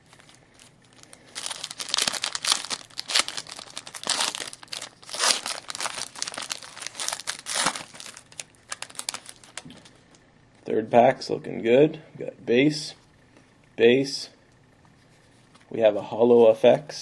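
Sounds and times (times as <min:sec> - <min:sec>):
foil wrapper tearing and crinkling: 0:00.1 - 0:09.7.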